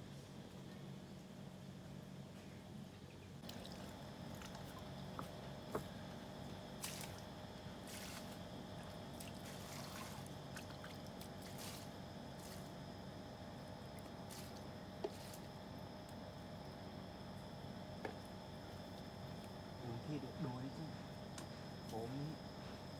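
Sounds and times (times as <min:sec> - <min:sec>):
steady low hum: 0:00.0 - 0:22.9
small splashes: 0:03.4 - 0:06.0, 0:06.8 - 0:12.8
water dripping and trickling: 0:03.4 - 0:11.8.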